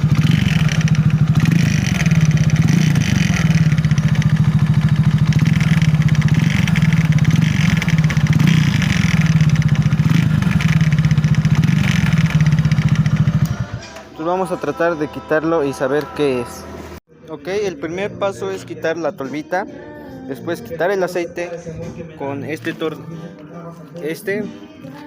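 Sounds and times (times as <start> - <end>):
motorcycle engine idling: 0.0 - 14.1.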